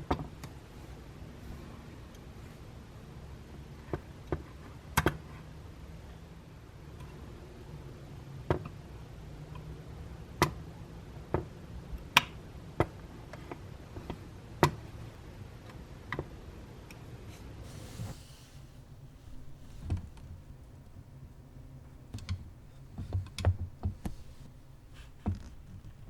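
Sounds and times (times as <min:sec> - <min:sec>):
low steady hum: 0:17.6 - 0:26.0.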